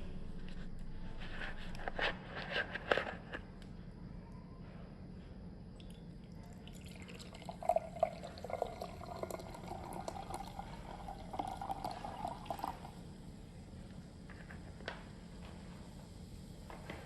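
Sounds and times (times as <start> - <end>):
liquid pouring into container: 5.8 - 13.1.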